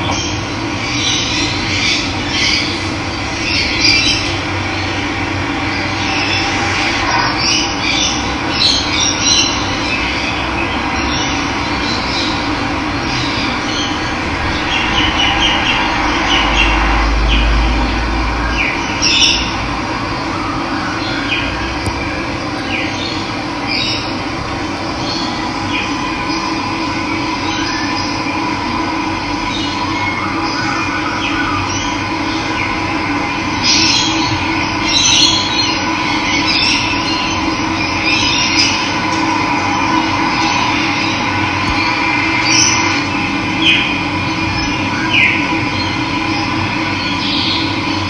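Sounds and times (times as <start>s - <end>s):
birds chirping: 21.0s - 28.4s.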